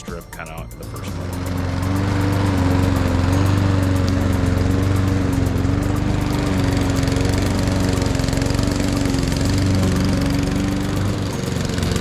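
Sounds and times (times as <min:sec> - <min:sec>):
lawn mower engine running: 0:00.0 - 0:12.0.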